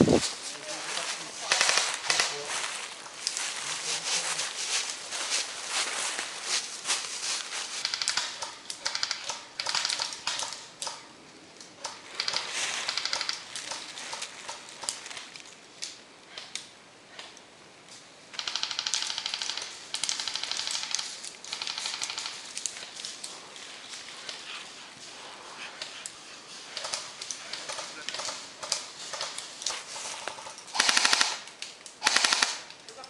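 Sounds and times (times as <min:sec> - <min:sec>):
airsoft guns firing bursts: 0:18.4 - 0:22.4, 0:30.4 - 0:32.7
airsoft single shots: 0:30.8 - 0:31.4, 0:32.0 - 0:32.7.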